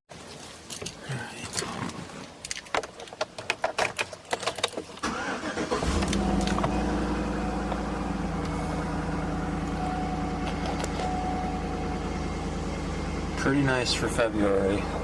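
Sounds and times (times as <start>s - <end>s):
engine starter cranking: 5.0s - 8.4s
car engine idling: 5.0s - 15.0s.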